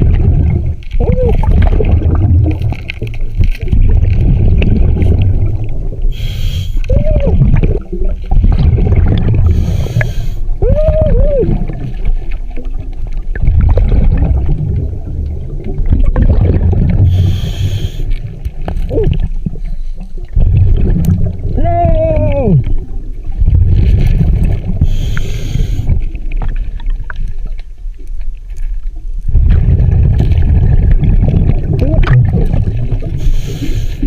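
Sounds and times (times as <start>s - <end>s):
low rumble on microphone: 0.0s - 34.0s
short hissing bursts: 6.1s - 6.8s, 9.6s - 10.4s, 17.1s - 18.1s, 24.8s - 25.9s, 33.2s - 34.0s.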